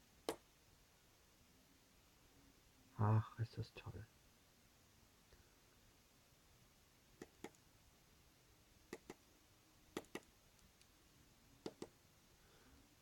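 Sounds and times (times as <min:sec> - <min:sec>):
stylus tapping on screen: 0:07.2 - 0:07.6, 0:08.9 - 0:09.2, 0:09.9 - 0:10.3, 0:11.6 - 0:12.0.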